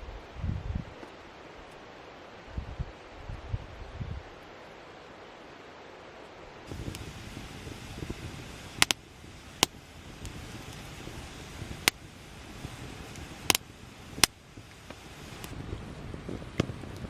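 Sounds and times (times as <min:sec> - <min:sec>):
campfire crackling: 0:06.6 - 0:17.0
burning wood popping: 0:06.7 - 0:17.0
low rushing noise: 0:06.7 - 0:17.0.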